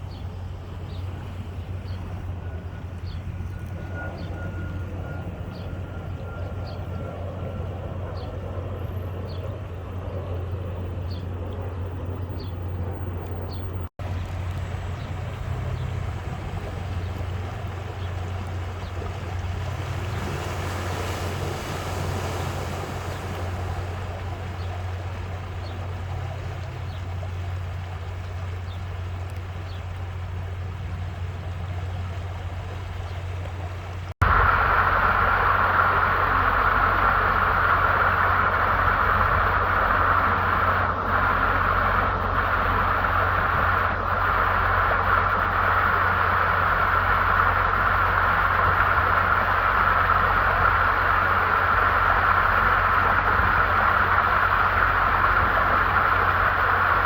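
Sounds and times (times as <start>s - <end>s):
vehicle interior low hum: 0.0s - 57.0s
tyre hiss on wet road: 34.2s - 57.0s.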